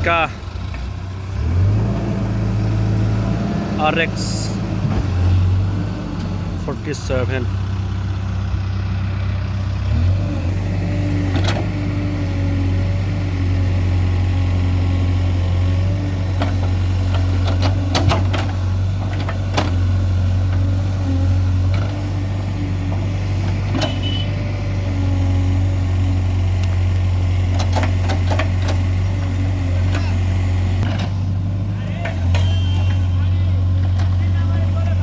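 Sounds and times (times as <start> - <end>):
heavy diesel engine humming: 0.0 - 35.0
sharp knocks and clanks: 16.4 - 19.8.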